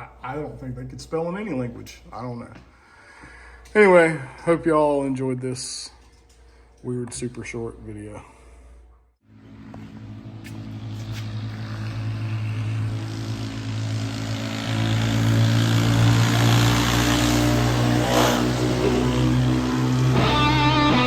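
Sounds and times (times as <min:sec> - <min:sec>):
low drone with engine-like rush: 0:08.3 - 0:21.0
electric guitar: 0:14.2 - 0:21.0.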